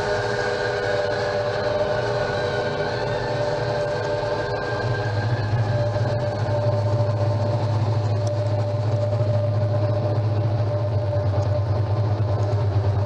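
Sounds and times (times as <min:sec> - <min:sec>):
low throbbing drone: 0:00.0 - 0:13.0
steady high tone: 0:00.0 - 0:13.0.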